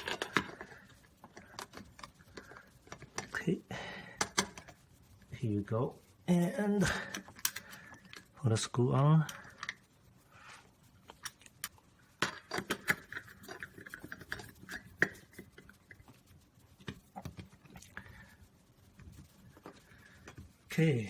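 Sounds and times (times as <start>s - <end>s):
screw clicking and scraping: 11.0s - 16.0s.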